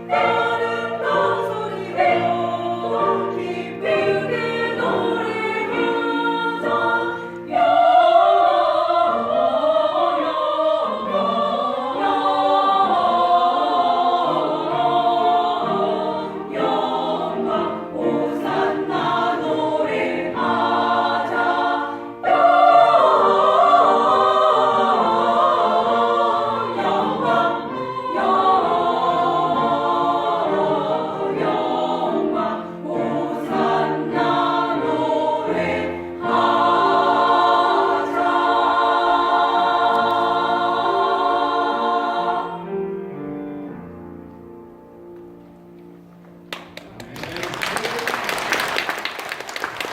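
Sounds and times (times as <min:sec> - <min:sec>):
vocal ensemble singing in harmony: 0:00.0 - 0:43.8.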